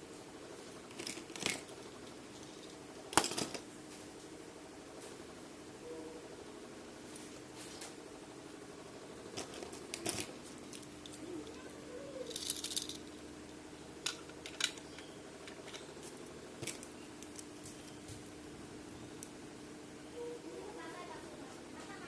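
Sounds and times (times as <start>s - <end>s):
faint steady hum: 0.0s - 22.0s
plastic toy pieces clicking: 12.3s - 13.0s.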